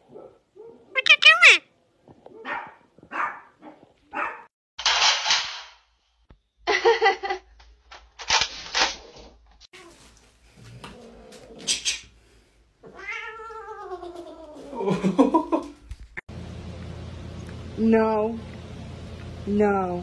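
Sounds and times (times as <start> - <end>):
cat meowing: 1.0 - 1.6, 12.8 - 14.7.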